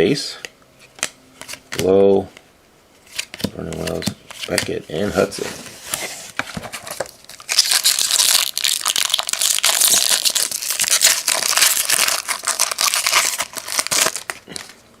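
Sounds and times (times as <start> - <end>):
plastic wrapper torn and crinkled: 7.2 - 14.8.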